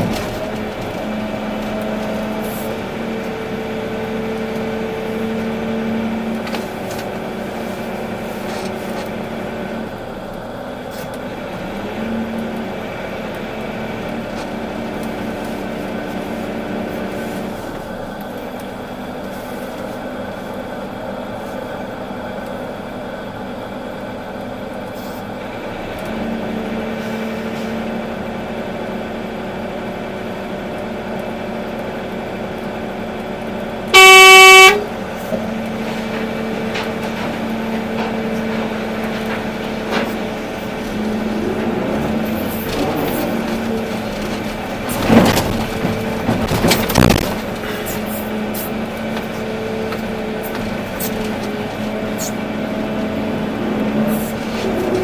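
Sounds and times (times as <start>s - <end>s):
excavator diesel engine running: 0.0s - 55.0s
horn blast: 33.9s - 35.0s.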